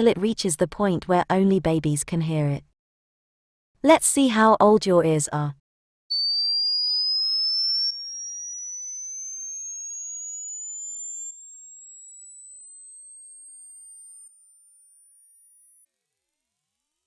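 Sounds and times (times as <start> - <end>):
high-pitched test tone: 6.1 - 15.8.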